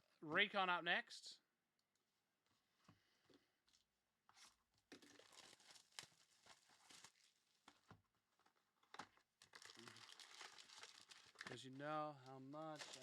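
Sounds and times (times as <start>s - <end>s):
plastic wrapping tearing and crinkling: 4.9s - 7.8s, 9.4s - 13.0s.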